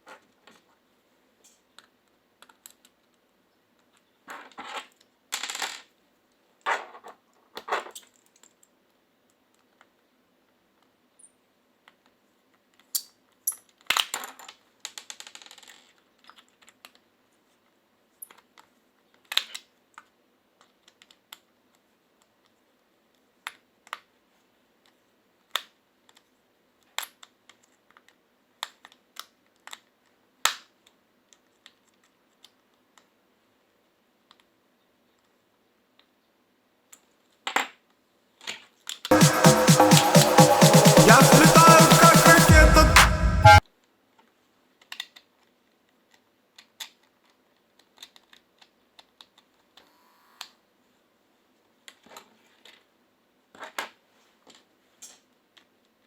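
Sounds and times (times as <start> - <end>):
small parts clicking and knocking: 1.4 - 3.2, 11.2 - 17.0, 18.2 - 22.6, 46.1 - 49.6.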